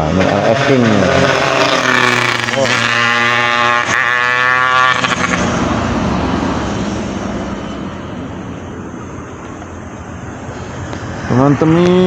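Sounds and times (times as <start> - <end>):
road noise: 0.0 - 12.0
vehicle engine passing: 1.0 - 7.6.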